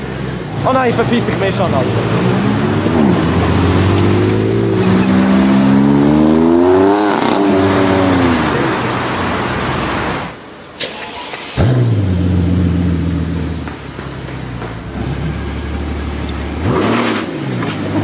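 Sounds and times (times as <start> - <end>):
car engine accelerating hard: 0.0 - 10.4, 14.9 - 18.0.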